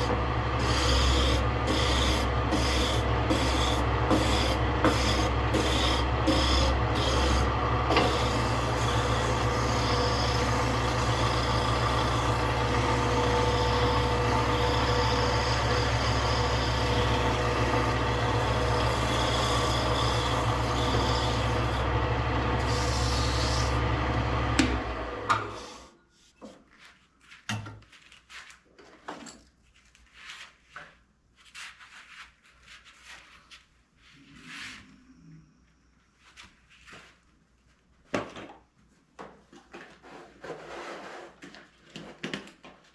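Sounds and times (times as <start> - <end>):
power sander on wood: 0.0 - 25.1.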